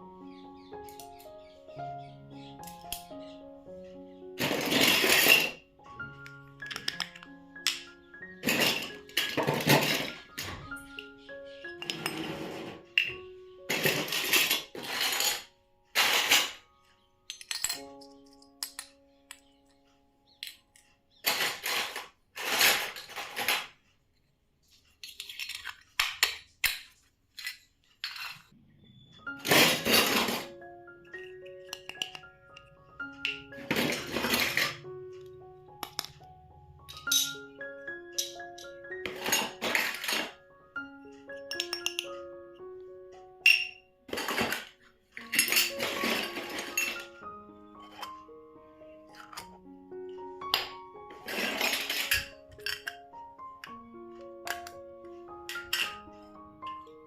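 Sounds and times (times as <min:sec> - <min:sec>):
gentle melody of held notes: 0:00.0 - 0:04.5, 0:05.6 - 0:15.9, 0:16.6 - 0:21.2, 0:28.6 - 0:57.0
small dishes clicking and clinking: 0:04.4 - 0:05.6, 0:06.2 - 0:16.6, 0:17.2 - 0:28.6, 0:29.3 - 0:34.8, 0:35.8 - 0:40.4, 0:41.3 - 0:42.2, 0:43.4 - 0:48.3, 0:49.0 - 0:49.6, 0:50.2 - 0:56.9
toy pieces scraping: 0:13.7 - 0:16.6, 0:21.2 - 0:23.8, 0:24.9 - 0:28.6, 0:51.2 - 0:52.9.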